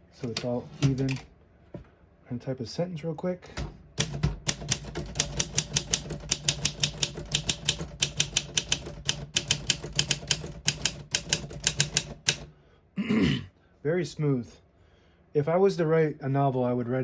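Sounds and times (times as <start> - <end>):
manual typewriter typing: 0.2 - 1.3, 3.6 - 12.5.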